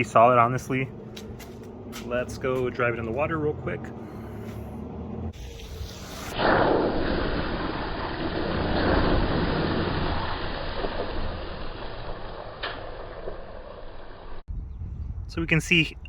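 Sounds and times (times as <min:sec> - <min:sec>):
tyres splashing through puddle: 0:05.4 - 0:14.4.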